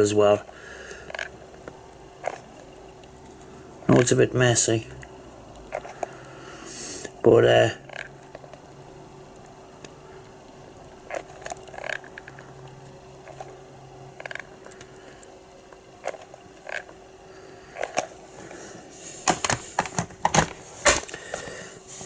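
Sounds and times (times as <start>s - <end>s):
faint steady hum: 0.0s - 22.0s
plastic device clicks and knocks: 19.3s - 21.2s.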